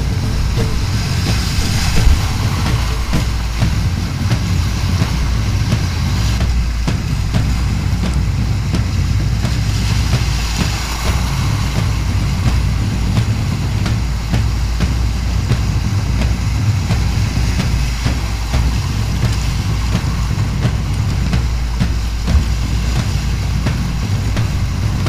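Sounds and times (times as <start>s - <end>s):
rushing river water: 0.0s - 25.0s
water splashes and knocks: 0.0s - 25.0s.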